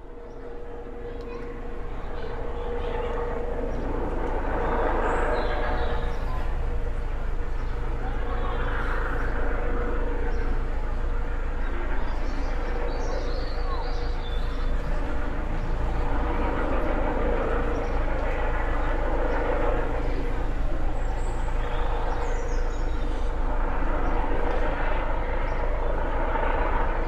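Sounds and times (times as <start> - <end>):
helicopter rotor and engine drone: 0.0 - 27.0.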